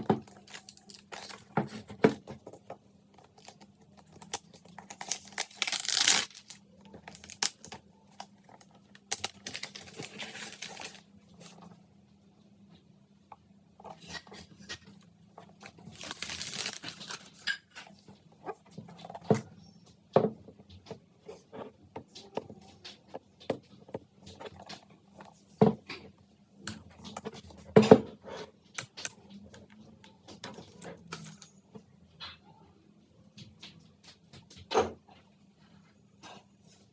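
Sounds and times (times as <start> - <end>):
packaging rustle: 3.3 - 11.1, 15.8 - 17.4
hands tapping packaging: 15.9 - 17.2.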